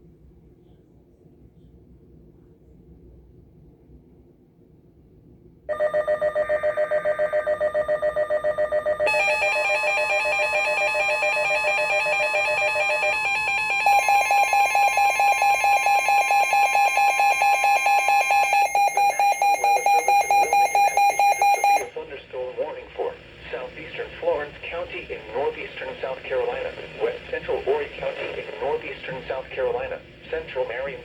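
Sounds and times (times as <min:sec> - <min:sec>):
fast electronic alarm beeping: 0:05.7 - 0:21.9
steady warning alert tone: 0:05.7 - 0:22.0.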